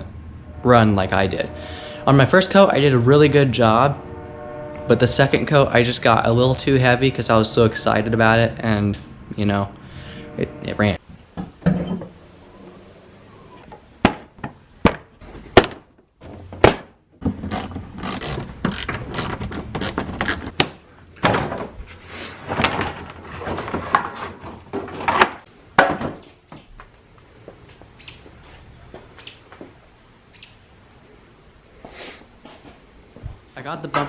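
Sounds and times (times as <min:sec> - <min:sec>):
rattling and scraping of parts: 0:11.0 - 0:14.5, 0:15.2 - 0:26.1.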